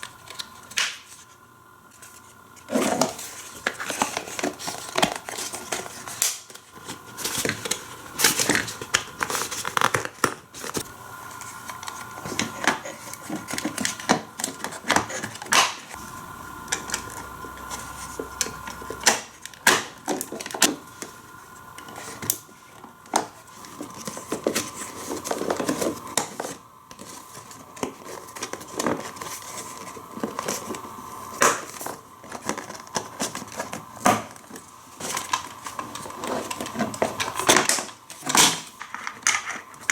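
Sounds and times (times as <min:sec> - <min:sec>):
plastic packaging rustling: 0:00.0 - 0:39.9
faint steady tone: 0:15.9 - 0:19.6.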